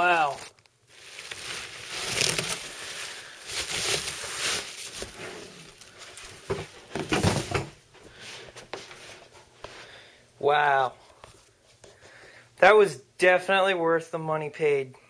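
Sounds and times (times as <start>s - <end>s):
packaging rustling and crinkling: 0.0s - 7.7s.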